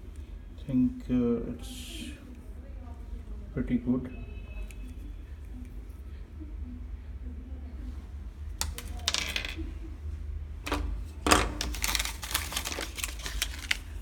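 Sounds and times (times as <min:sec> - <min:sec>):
plastic clicks and clatter: 0:08.6 - 0:09.6, 0:10.7 - 0:14.0
packaging rustling: 0:10.7 - 0:14.0.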